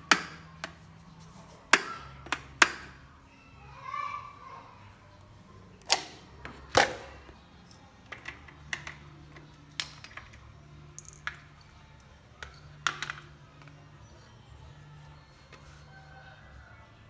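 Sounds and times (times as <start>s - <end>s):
kettle parts clicking and knocking: 0.0s - 0.8s, 1.7s - 3.0s, 5.8s - 11.7s, 12.4s - 13.7s.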